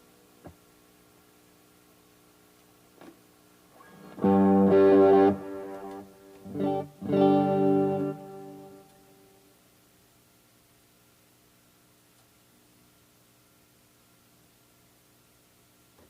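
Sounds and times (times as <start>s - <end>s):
electric guitar chords: 4.0s - 9.4s.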